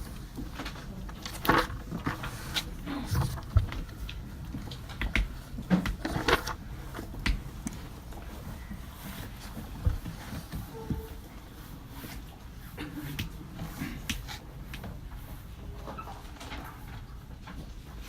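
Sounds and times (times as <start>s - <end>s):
rustling: 0.0s - 12.6s.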